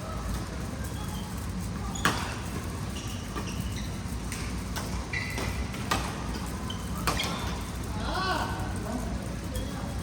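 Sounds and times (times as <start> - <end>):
shoes squeaking on court: 0.8 - 7.8.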